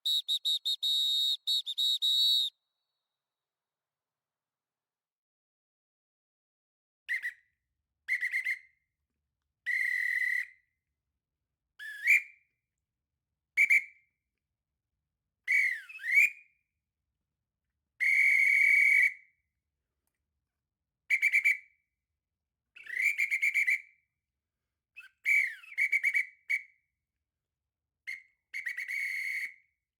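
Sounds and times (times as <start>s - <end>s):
referee whistle blasts: 0.0s - 2.6s.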